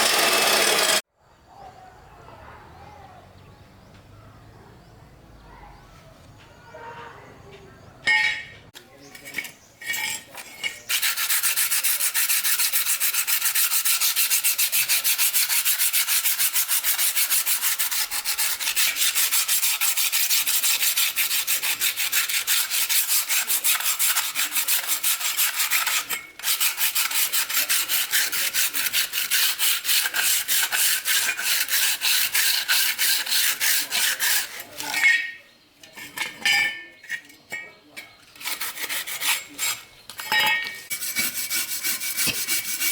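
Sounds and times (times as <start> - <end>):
hand tool scraping strokes: 0.0 - 1.0, 9.1 - 37.4, 38.0 - 42.9.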